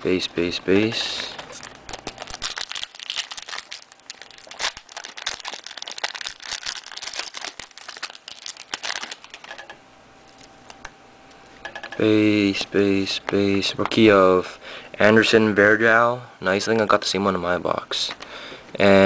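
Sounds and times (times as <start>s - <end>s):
wrapper crinkling: 1.1s - 9.6s.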